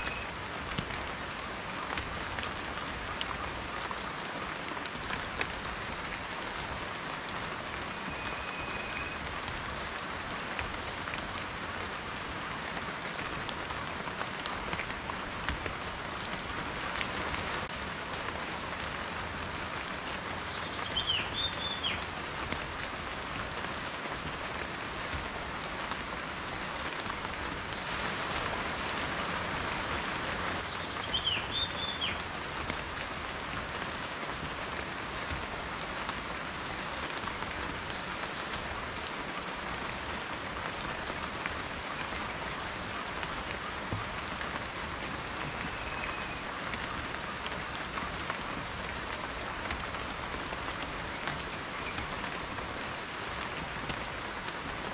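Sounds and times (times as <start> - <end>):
raindrops ticking: 0.0 - 27.9
steady rain hiss: 0.0 - 54.9.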